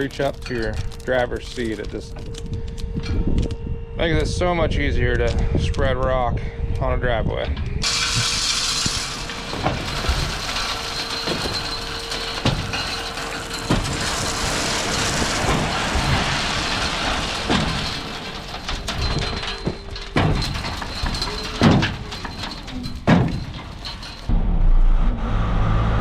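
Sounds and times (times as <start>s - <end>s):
rock sliding out: 0.0s - 2.9s, 7.8s - 24.3s
hydraulic pump whine: 7.8s - 24.3s
truck engine running: 7.8s - 24.4s.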